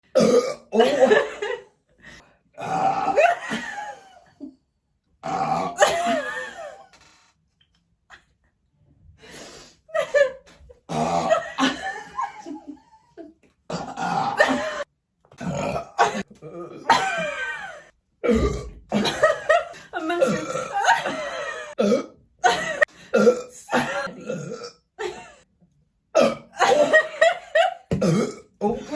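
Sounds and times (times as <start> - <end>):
woman burping loudly: 0.2 - 1.5, 2.6 - 3.7, 5.2 - 6.7, 10.9 - 11.9, 13.7 - 25.4, 26.2 - 27.1, 27.9 - 28.9.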